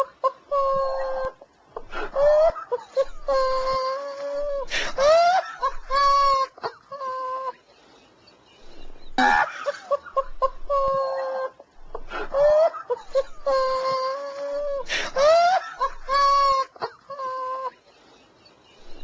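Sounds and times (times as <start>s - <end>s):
person laughing: 0.0s - 7.6s, 9.2s - 17.8s
sharp gasping breaths: 4.7s - 5.0s, 7.7s - 9.4s, 11.9s - 12.4s, 14.8s - 15.3s.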